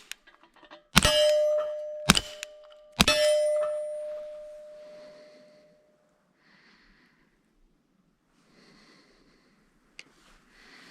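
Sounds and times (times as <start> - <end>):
metallic ring of gunshot: 1.0 - 5.4.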